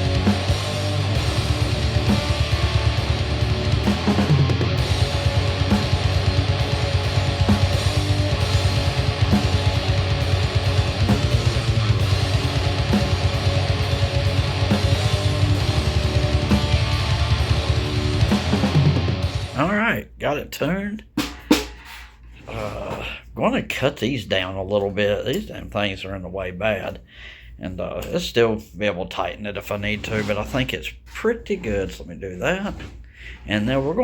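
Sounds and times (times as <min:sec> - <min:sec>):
electric guitar rock music: 0:00.0 - 0:19.7.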